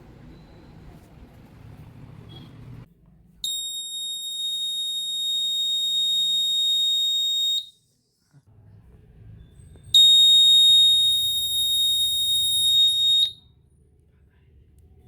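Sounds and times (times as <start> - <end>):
alarm buzzer high-pitched tone: 3.5 - 7.7, 10.0 - 13.4.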